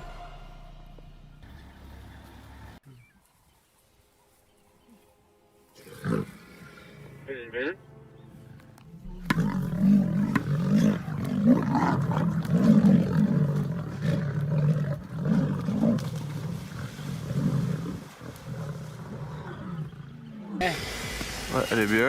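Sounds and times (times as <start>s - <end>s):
lions growling and snarling: 5.8s - 7.3s, 9.1s - 20.7s.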